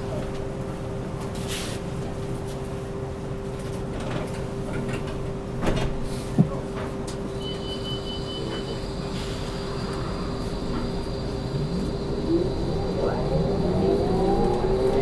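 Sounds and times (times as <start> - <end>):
bus motor hum: 8.6 - 15.0.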